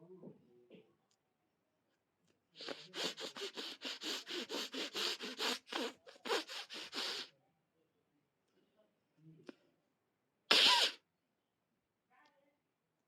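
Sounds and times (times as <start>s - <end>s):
person sniffing rapidly: 2.6s - 7.3s, 10.5s - 11.0s.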